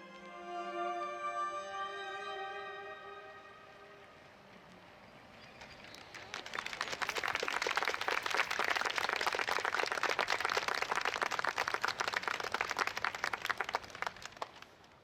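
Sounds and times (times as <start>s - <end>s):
audience applauding: 5.6s - 15.0s.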